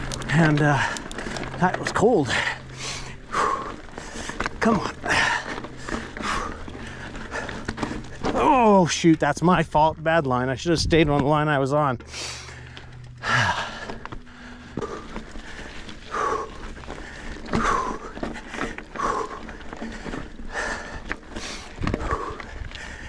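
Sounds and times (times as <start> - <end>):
man breathing hard: 2.3 - 8.3, 12.0 - 23.0.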